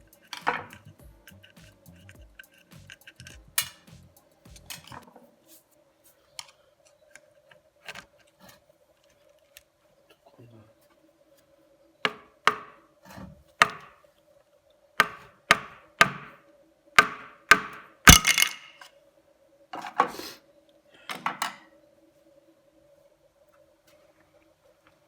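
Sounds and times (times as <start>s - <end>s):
faint steady hum: 0.0s - 25.0s
tools clattering: 0.2s - 0.9s, 4.6s - 5.1s, 18.1s - 18.9s
tools knocking on workbench: 0.4s - 0.8s, 15.0s - 16.3s.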